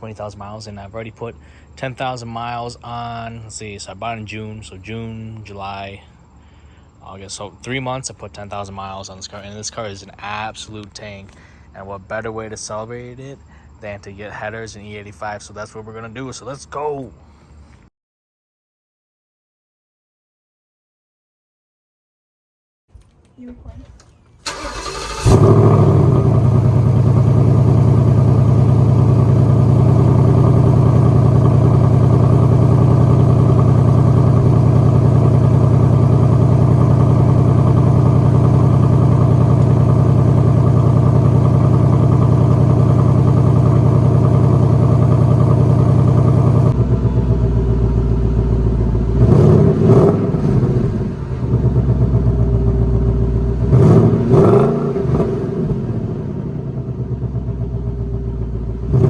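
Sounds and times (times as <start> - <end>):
car engine idling: 24.4 - 54.3, 55.8 - 59.0
car engine revving: 24.5 - 59.0.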